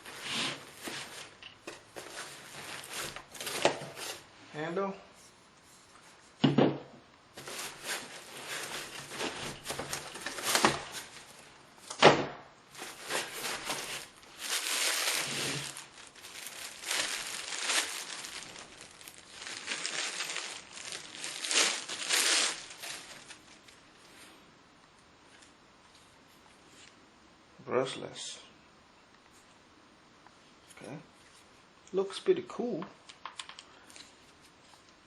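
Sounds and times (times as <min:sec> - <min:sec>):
plastic packaging crinkling: 0:00.0 - 0:04.3, 0:07.4 - 0:11.6, 0:12.7 - 0:23.8.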